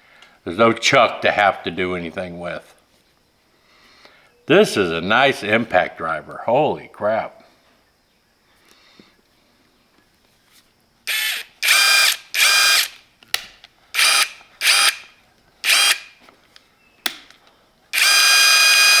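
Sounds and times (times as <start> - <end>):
impact driver motor whine: 11.1 - 13.0, 14.0 - 16.1, 18.0 - 19.0.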